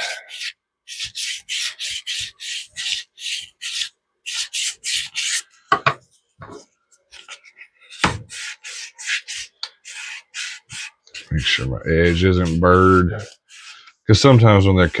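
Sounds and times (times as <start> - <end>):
sanding plastic pipe: 7.2 - 15.0.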